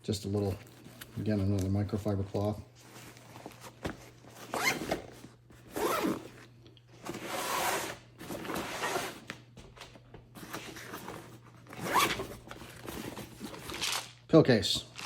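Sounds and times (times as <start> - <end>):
gear being handled in pocket: 0.6 - 6.5, 10.4 - 14.2
zipper rasping: 4.5 - 5.0, 5.7 - 6.3, 11.7 - 12.2.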